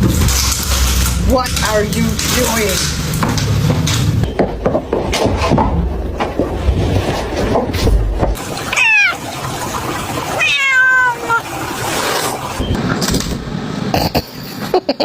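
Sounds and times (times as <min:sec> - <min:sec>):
cat meowing: 0:08.6 - 0:09.3, 0:10.3 - 0:11.5.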